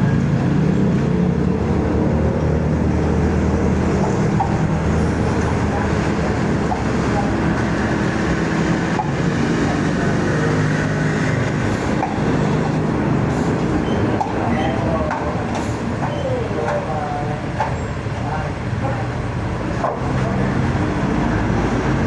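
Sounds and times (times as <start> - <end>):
vehicle engine and road rumble: 0.0 - 22.0.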